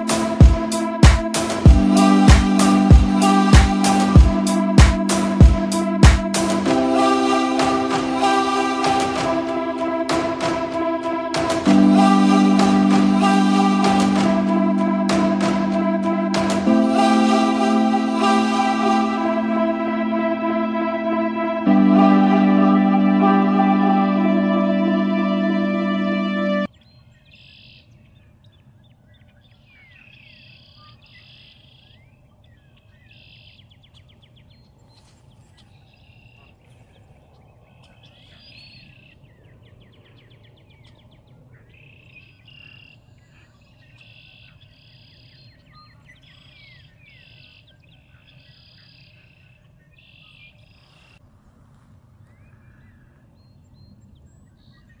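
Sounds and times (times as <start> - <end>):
small birds chirping: 26.8 - 51.2.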